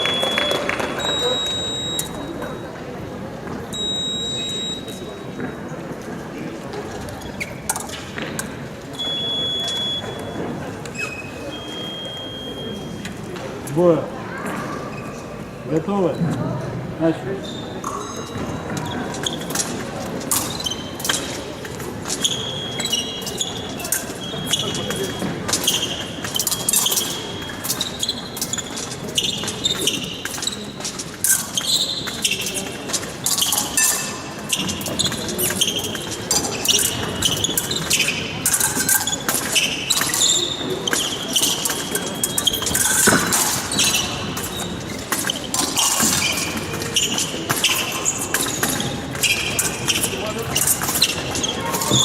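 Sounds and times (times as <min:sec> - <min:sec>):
shoes squeaking: 0:00.0 - 0:02.8, 0:03.7 - 0:13.8, 0:17.4 - 0:52.0.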